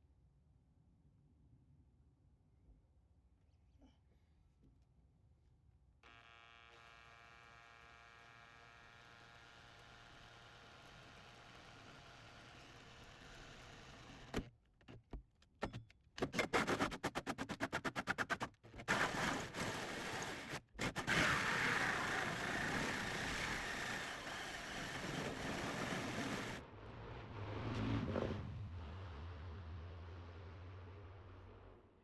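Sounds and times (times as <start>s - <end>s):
power drill cutting metal: 18.9s - 26.6s.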